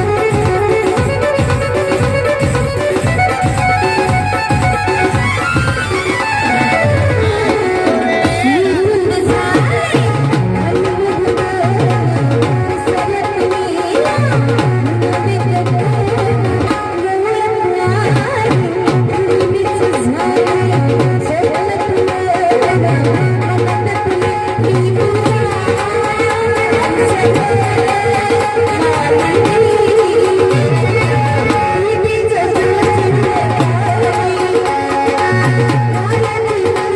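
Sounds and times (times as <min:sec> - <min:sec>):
hand drum rhythm: 0:00.0 - 0:36.9
sliding pitch melody: 0:00.2 - 0:11.8.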